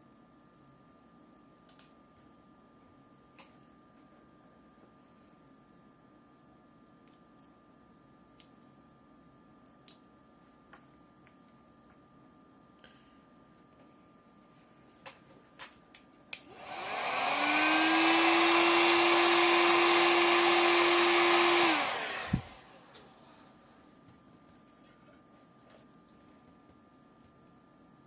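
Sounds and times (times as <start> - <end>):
small electric motor humming: 16.4 - 23.8.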